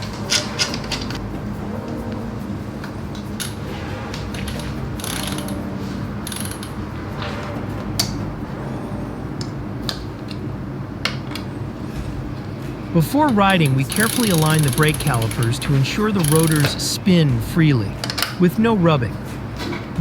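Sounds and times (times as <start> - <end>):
quiet background music: 0.0 - 20.0
mechanical clicks and scrapes: 3.3 - 5.6, 13.4 - 16.9.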